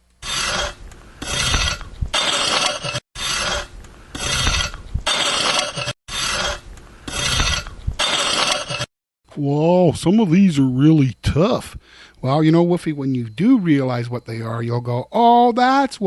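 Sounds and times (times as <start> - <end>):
rough rasping scraping strokes: 0.2 - 8.9.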